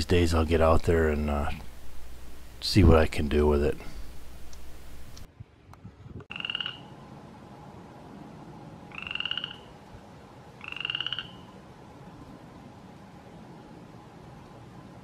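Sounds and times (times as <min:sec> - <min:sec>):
frog trilling: 0:06.3 - 0:06.9, 0:08.9 - 0:09.7, 0:10.6 - 0:11.5.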